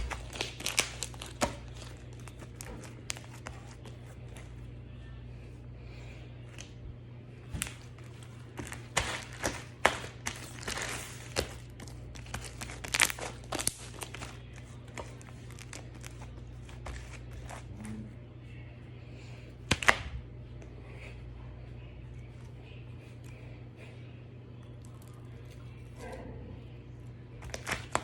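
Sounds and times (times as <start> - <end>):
slime crackling and popping: 0.0 - 3.6, 8.6 - 16.2.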